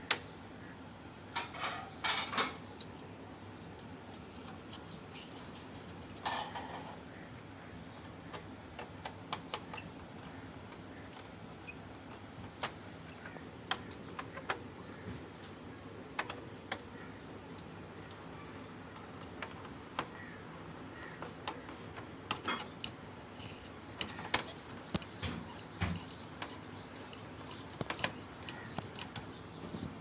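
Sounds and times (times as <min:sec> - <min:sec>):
small hard parts clicking: 0:08.0 - 0:14.7, 0:15.4 - 0:30.0.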